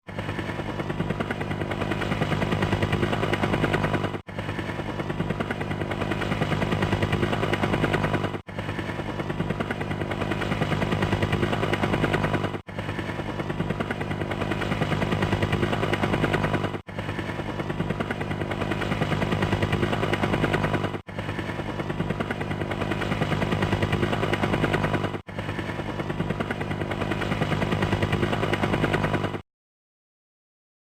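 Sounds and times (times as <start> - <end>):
helicopter engine hum: 0.0 - 29.4
helicopter rotor blades chopping: 0.0 - 29.4.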